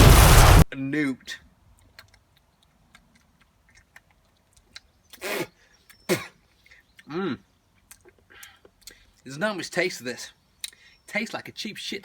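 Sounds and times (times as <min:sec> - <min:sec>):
faint small clicks: 0:01.7 - 0:05.2.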